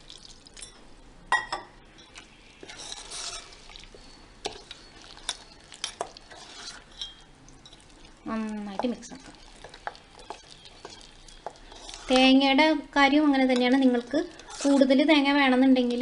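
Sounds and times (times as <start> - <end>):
spoon stirring batter in bowl: 1.9 - 16.0
spoon clinking against bowl: 6.8 - 7.9.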